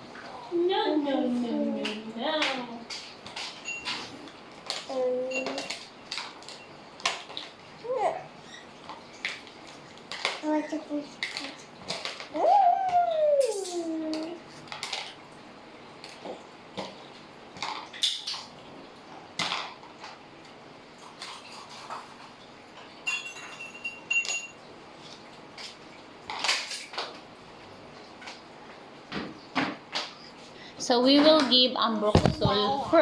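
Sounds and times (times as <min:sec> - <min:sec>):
cutlery and containers clinking: 0:01.9 - 0:07.6, 0:21.0 - 0:22.4, 0:23.0 - 0:27.2.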